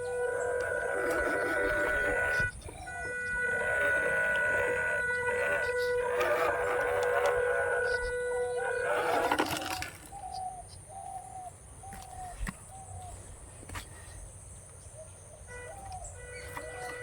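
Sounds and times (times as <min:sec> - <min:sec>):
bird cooing: 0:00.0 - 0:12.4.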